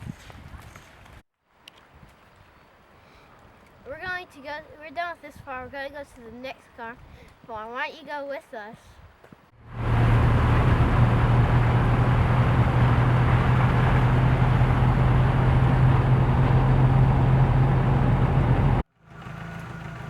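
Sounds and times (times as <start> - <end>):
road noise: 9.5 - 20.0
vehicle engine hum: 9.6 - 20.0.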